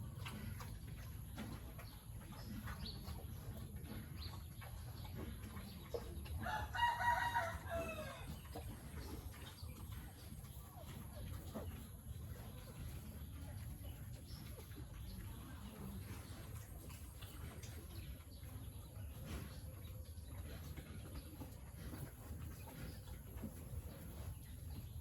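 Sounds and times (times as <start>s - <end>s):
rooster crowing: 6.4s - 8.2s.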